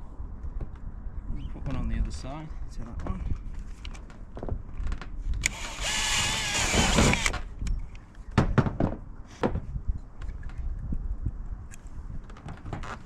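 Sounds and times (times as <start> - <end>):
cordless drill boring metal: 5.4 - 7.4.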